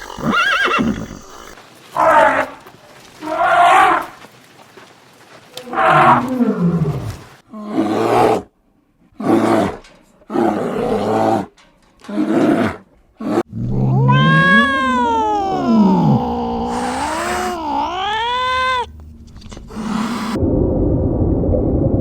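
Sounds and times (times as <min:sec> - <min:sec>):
cat growling: 0:13.4 - 0:18.9, 0:19.6 - 0:20.4
cat harsh calls: 0:13.8 - 0:18.9
cat meowing: 0:13.8 - 0:18.9.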